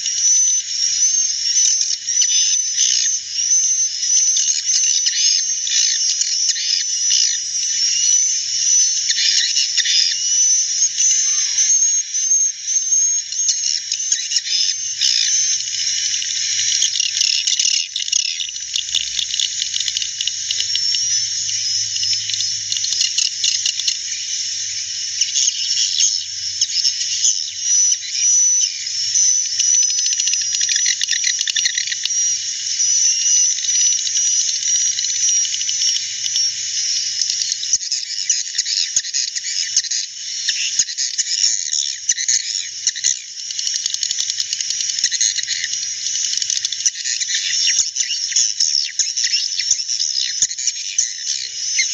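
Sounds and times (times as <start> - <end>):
swiftlets twittering: 12.6 - 37.8.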